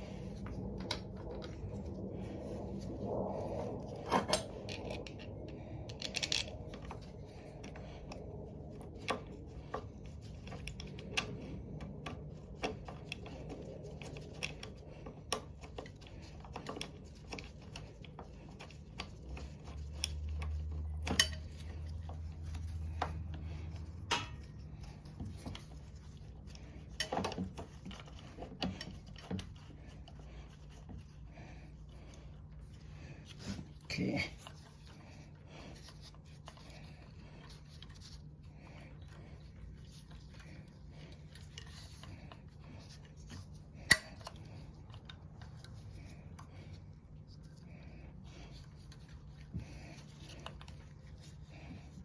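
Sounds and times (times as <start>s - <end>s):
low hum: 0.0s - 52.0s
tools and metal parts clinking: 5.9s - 7.0s, 19.4s - 21.7s.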